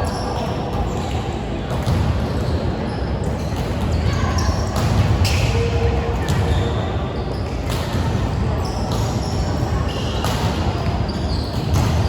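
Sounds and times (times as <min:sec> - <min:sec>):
hubbub of voices in gym: 0:00.0 - 0:12.0
volleyball hits: 0:03.5 - 0:05.6, 0:10.2 - 0:12.0
shoes squeaking on court floor: 0:08.6 - 0:12.0.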